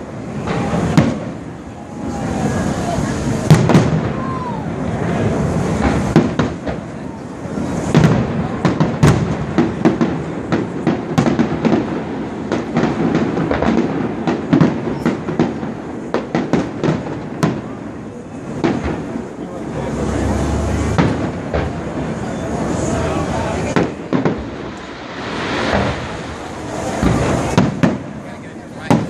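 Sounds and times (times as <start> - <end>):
fireworks bangs and crackling: 0.0 - 29.0
echoing booms rumble: 23.6 - 29.0.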